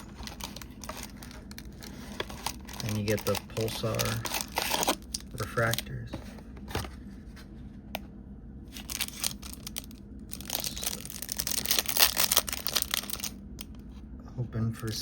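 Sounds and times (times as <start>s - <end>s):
packaging crinkling and ripping: 0.0s - 5.9s, 8.7s - 13.4s.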